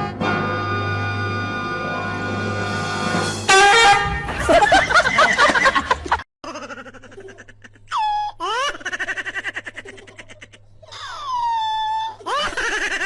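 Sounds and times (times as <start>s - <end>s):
music: 0.0s - 6.0s
animal crying calls: 9.7s - 12.8s.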